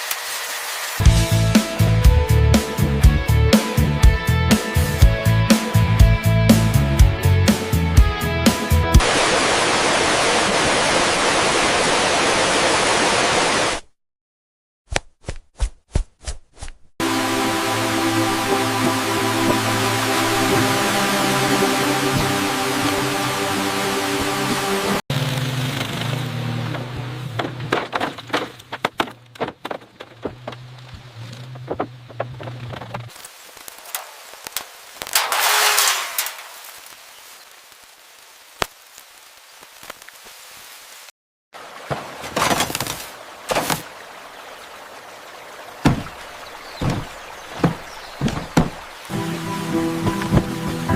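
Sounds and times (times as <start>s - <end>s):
music: 1.0s - 9.0s, 17.0s - 25.0s, 49.1s - 50.9s
steady hiss: 33.1s - 41.1s
short sharp knocks: 46.8s - 48.8s.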